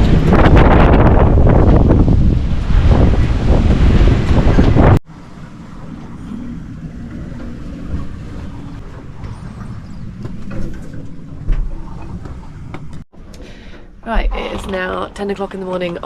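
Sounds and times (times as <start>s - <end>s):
wind buffeting microphone: 0.0s - 13.0s
sea noise: 0.0s - 16.0s.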